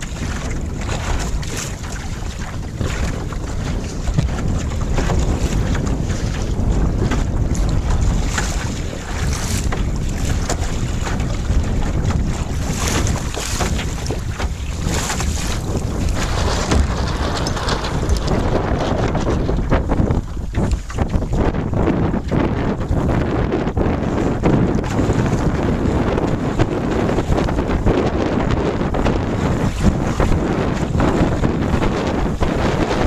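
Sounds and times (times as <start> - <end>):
water rushing against hull: 0.0 - 33.0
wind buffeting microphone: 0.0 - 33.0.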